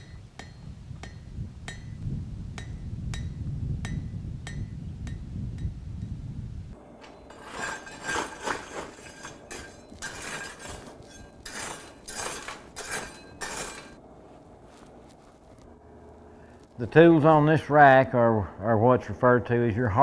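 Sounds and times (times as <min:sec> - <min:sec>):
metal clinking and clanking: 0:06.8 - 0:14.0.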